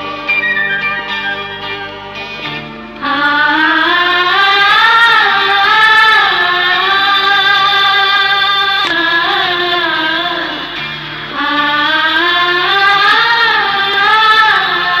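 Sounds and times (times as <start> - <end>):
sad sung ringtone melody: 0.0 - 2.7.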